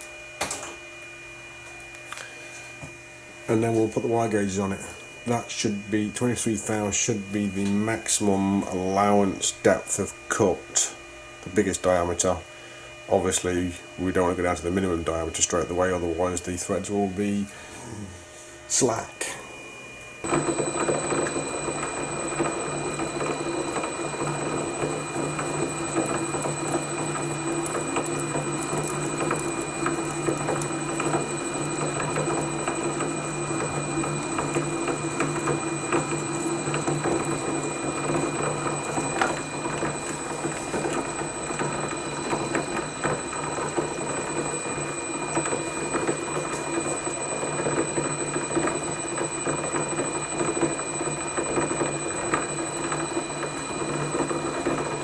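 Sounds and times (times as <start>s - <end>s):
lathe gear whine: 19.6s - 55.0s.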